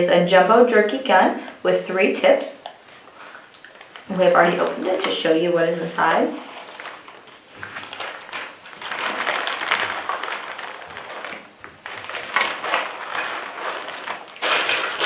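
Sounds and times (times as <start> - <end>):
cardboard and plastic rustling: 3.0 - 15.0.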